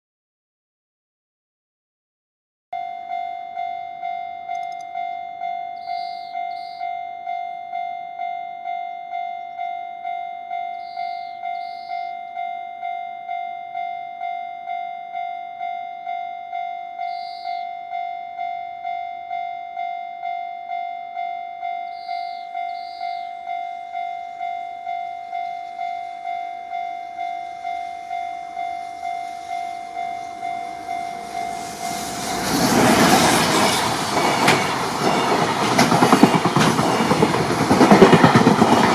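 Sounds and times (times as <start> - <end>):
level crossing alarm bell ringing: 2.8 - 32.2
freight train running: 9.1 - 38.9.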